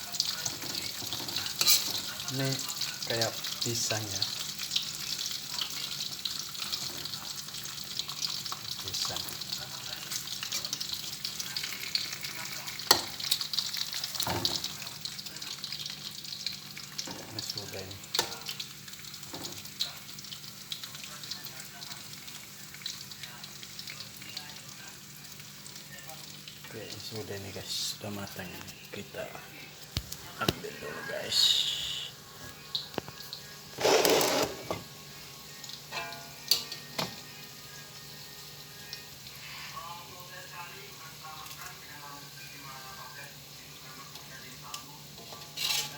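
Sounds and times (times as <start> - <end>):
food frying in hot oil: 0.0 - 45.9
utensil scraping frying pan: 0.4 - 2.2, 33.7 - 34.9, 45.2 - 45.9.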